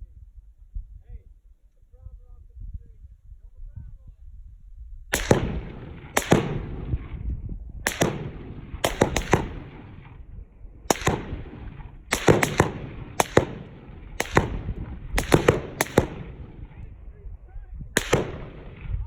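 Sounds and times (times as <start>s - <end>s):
gunshots with rolling echo: 5.1s - 19.0s.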